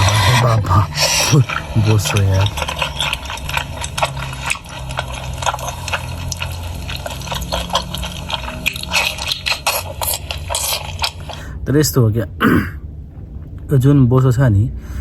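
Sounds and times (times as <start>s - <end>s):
wet chewing and lip-smacking: 0.0s - 11.5s
low hum: 0.0s - 15.0s.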